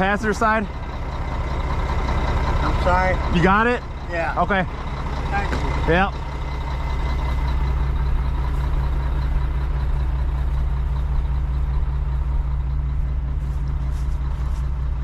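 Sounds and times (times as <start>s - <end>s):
diesel engine running: 0.0s - 15.0s.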